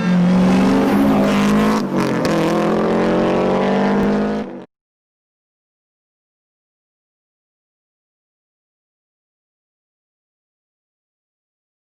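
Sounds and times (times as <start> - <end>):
car engine revving high: 0.0 - 4.7.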